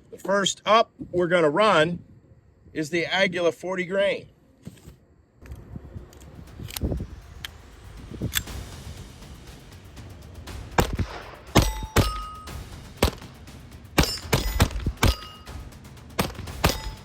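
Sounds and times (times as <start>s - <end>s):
steel plate ringing: 11.5s - 12.6s, 14.0s - 15.6s, 16.6s - 17.0s
pistol shots: 13.0s - 13.3s, 14.0s - 15.5s, 16.2s - 17.0s.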